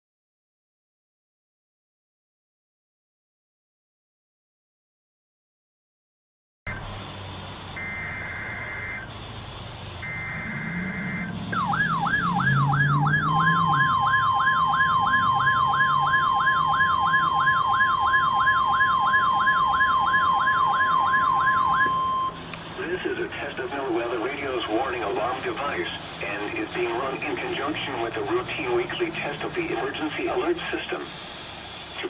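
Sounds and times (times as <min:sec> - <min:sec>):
steady warning alarm tone: 0:06.7 - 0:22.4
warbling siren tone: 0:06.7 - 0:22.4
digital header tones: 0:07.8 - 0:09.1, 0:10.0 - 0:12.6, 0:19.8 - 0:22.4
radio hiss: 0:22.6 - 0:32.0.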